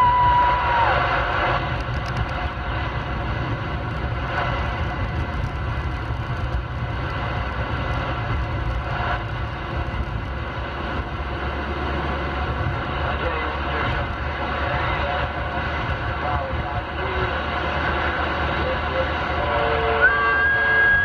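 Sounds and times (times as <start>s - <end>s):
road and tyre rumble: 0.0s - 21.0s
radio static hiss: 12.9s - 20.8s.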